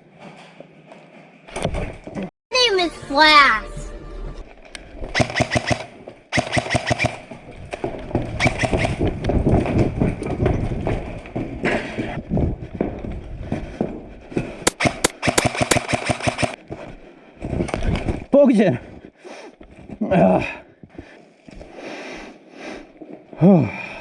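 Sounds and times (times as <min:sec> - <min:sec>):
airsoft rifles firing bursts: 0:05.2 - 0:07.3, 0:08.4 - 0:09.0, 0:14.7 - 0:16.6.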